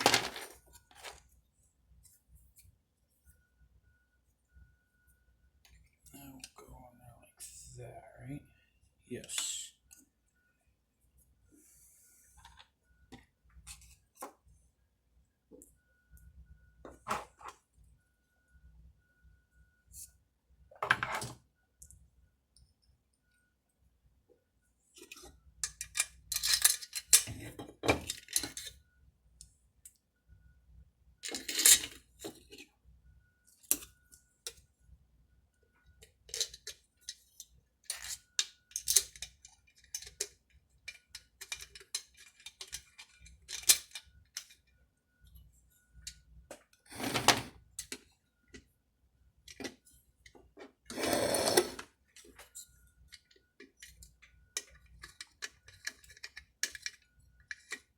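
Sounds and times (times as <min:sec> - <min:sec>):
metal tools clicking and clattering: 0:25.0 - 0:28.7, 0:31.2 - 0:32.5, 0:36.3 - 0:37.2, 0:37.8 - 0:44.6, 0:53.1 - 0:57.9.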